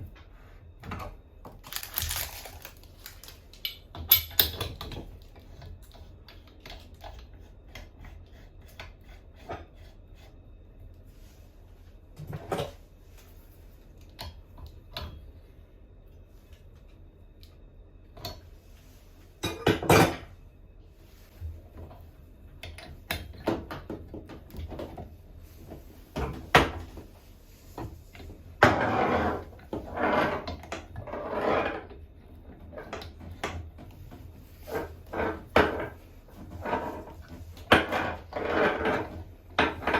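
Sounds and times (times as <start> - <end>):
tools and metal parts clinking: 1.6 - 5.1.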